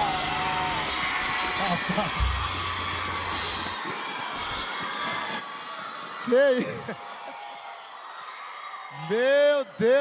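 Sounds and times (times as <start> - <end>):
cymbal crashes: 0.0 - 3.8
crowd cheering and shouting: 0.0 - 10.0
low bass hits: 2.0 - 3.6.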